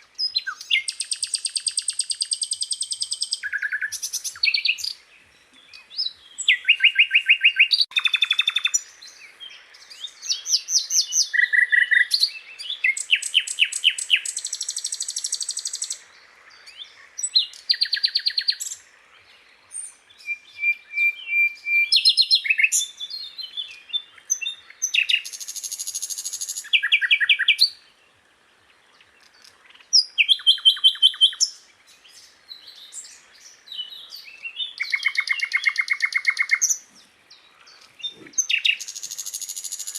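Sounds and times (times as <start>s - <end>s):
thin steady bird whistle: 0.0s - 5.0s, 5.6s - 16.1s, 19.6s - 27.8s, 30.0s - 36.9s, 37.6s - 39.9s
bird singing trills: 0.0s - 18.9s, 19.6s - 28.0s, 28.9s - 39.9s.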